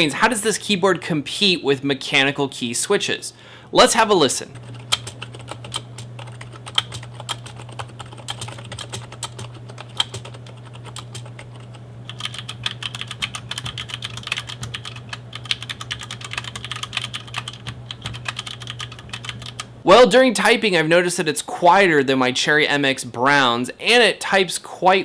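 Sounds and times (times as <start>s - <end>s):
typing on keyboard: 4.6s - 19.7s.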